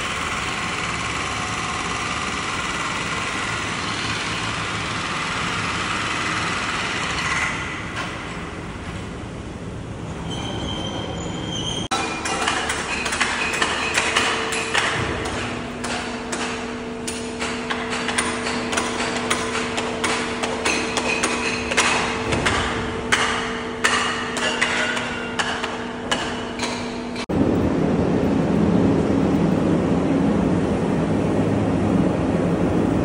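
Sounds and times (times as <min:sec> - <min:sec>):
machine hum: 0:00.0 - 0:33.0
hammer strikes on metal: 0:11.9 - 0:27.3.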